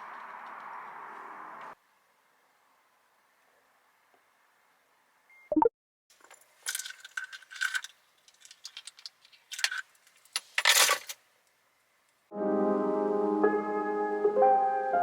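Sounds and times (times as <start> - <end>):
small hard objects clinking: 6.2 - 11.2
piano music: 12.3 - 15.0.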